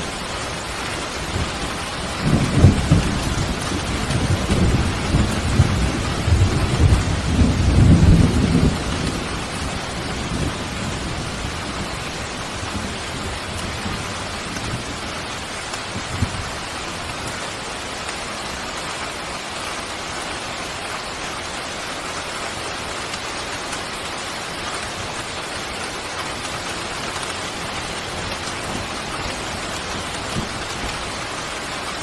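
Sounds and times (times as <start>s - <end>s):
steady rain falling: 0.0s - 32.0s.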